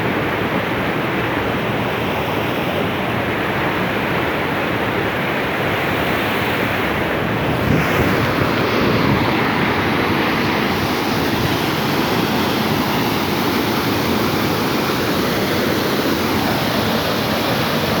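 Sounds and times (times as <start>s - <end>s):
waterfall rushing: 0.0s - 18.0s.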